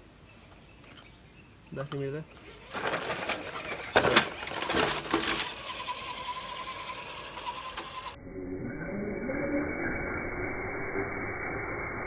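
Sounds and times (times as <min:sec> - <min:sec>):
small electric motor whining: 0:02.4 - 0:08.2.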